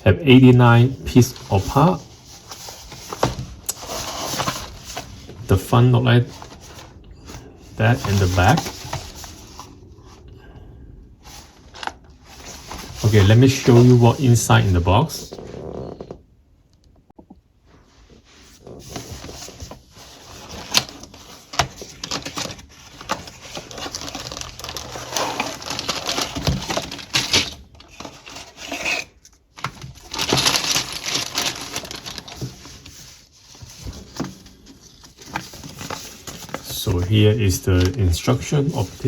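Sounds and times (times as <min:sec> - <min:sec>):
paper and card rustling: 0:00.6 - 0:09.8, 0:11.2 - 0:15.4, 0:18.2 - 0:39.0.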